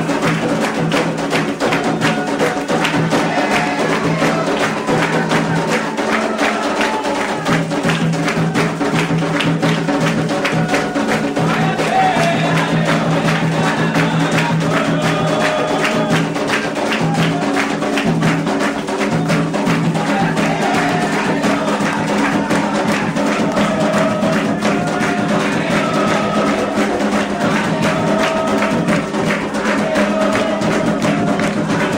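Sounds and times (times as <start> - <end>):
hand drums: 0.0 - 31.9.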